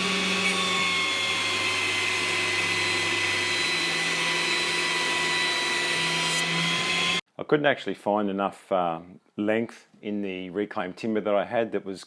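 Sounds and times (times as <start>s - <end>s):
thickness planer running: 0.0s - 7.2s.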